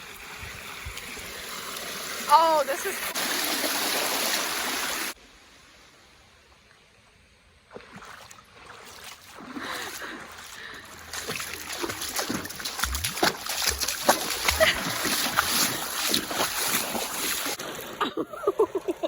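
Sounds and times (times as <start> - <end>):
creek water rushing: 0.0 - 6.1, 7.7 - 18.0
splashing in shallow water: 7.6 - 19.0.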